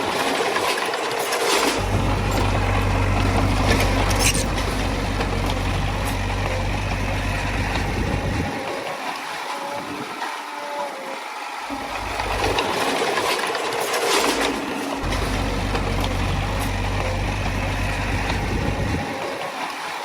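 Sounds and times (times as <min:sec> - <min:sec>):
diesel machinery engine running: 0:01.7 - 0:08.8, 0:11.7 - 0:19.5.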